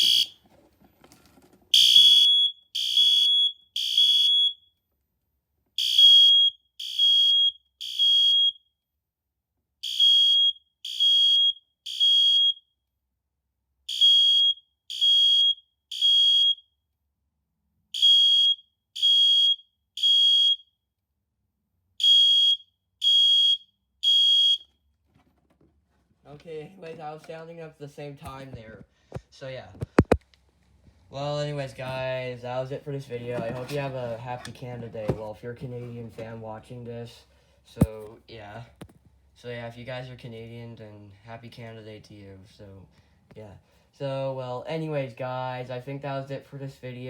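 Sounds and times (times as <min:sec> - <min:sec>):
horn strobe alarm: 0:00.0 - 0:00.4, 0:01.8 - 0:04.6
smoke alarm beeping: 0:00.0 - 0:00.4, 0:01.8 - 0:04.7, 0:05.8 - 0:08.6, 0:09.8 - 0:12.6, 0:13.9 - 0:16.6, 0:18.0 - 0:20.7, 0:22.0 - 0:24.7.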